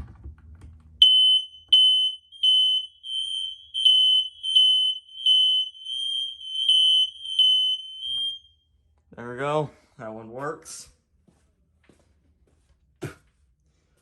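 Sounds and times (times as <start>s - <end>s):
smoke alarm beeping: 1.0s - 8.7s.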